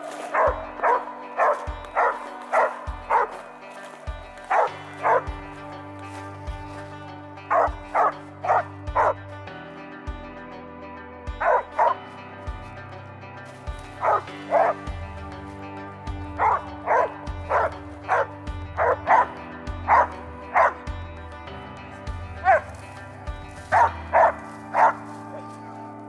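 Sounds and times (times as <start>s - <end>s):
dog barking: 0.0s - 6.8s, 7.5s - 9.2s, 11.4s - 12.1s, 13.9s - 14.9s, 16.3s - 20.8s, 22.4s - 22.9s, 23.6s - 26.0s
music with slow bass beat: 0.0s - 26.0s.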